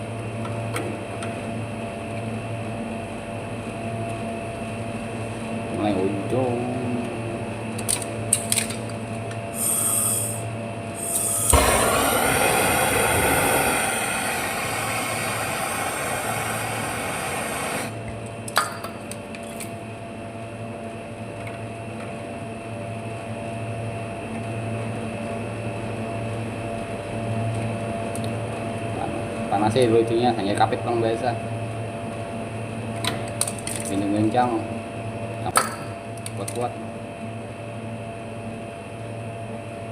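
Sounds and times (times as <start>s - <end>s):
loud hiss of gas: 9.5s - 18.0s
machine humming: 9.6s - 18.2s.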